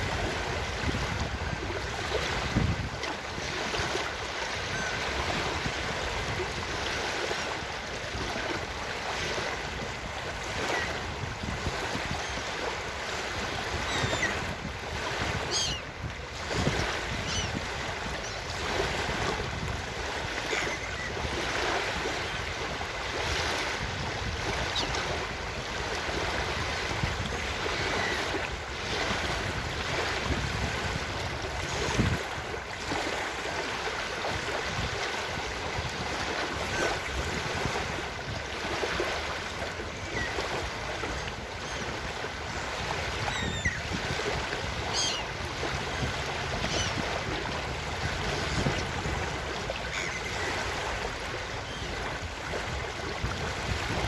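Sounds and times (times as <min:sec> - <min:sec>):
ocean surf on a beach: 0:00.0 - 0:54.0
wind: 0:00.0 - 0:54.0
faint seagull calls: 0:13.8 - 0:14.4, 0:15.4 - 0:15.9, 0:17.1 - 0:17.6, 0:20.5 - 0:21.2, 0:40.0 - 0:40.5, 0:41.6 - 0:42.0, 0:43.2 - 0:43.9, 0:44.8 - 0:45.3, 0:46.6 - 0:47.1, 0:49.8 - 0:50.6.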